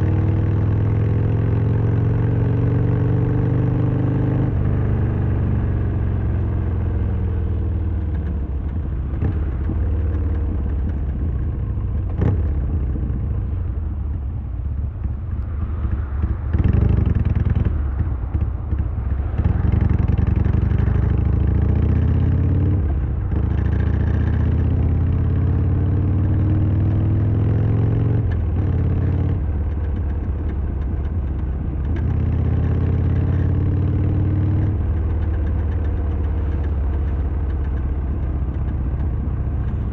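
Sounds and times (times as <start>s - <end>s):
motorcycle engine revving: 9.1s - 13.4s.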